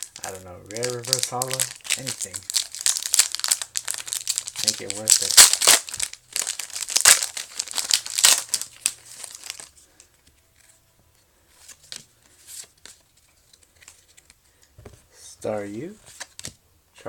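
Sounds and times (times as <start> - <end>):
foil wrapper crinkling and tearing: 0.0 - 9.7
faint rustles of cards: 0.0 - 16.6.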